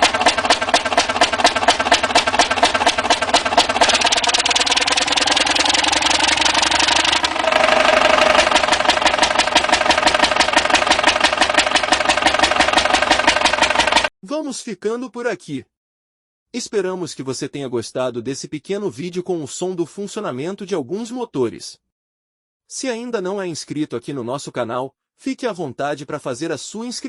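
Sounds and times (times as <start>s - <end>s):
large diesel engine running: 0.0s - 14.1s.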